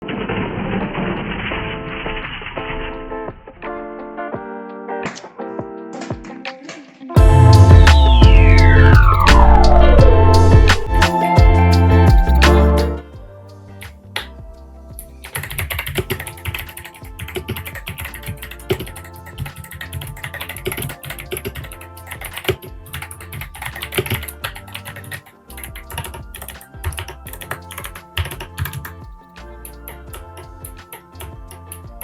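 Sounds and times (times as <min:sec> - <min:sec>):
background music: 0:01.4 - 0:32.0
fast typing on mechanical keyboard: 0:15.3 - 0:28.9.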